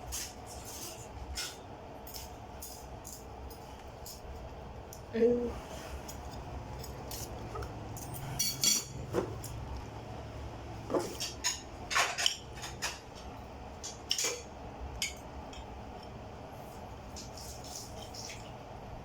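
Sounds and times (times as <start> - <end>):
cutlery clinking against dishes: 8.0 - 9.5, 11.0 - 13.1, 13.8 - 15.3.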